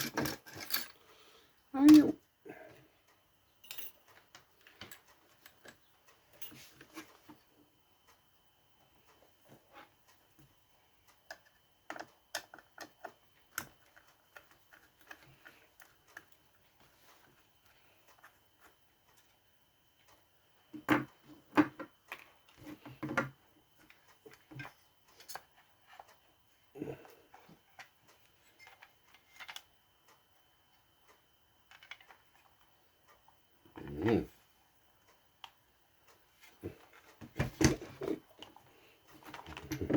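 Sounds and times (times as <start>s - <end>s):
clicks and taps of tools: 11.3s - 16.4s.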